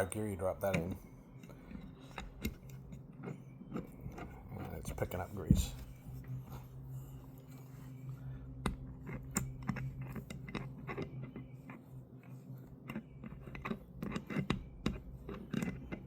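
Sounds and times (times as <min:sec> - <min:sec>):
steady low hum: 0:00.0 - 0:16.0
gear clicking through grease: 0:12.8 - 0:16.0.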